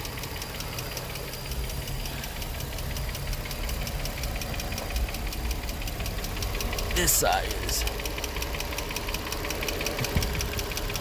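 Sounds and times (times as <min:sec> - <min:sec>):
car engine idling with ticking: 0:00.0 - 0:11.0.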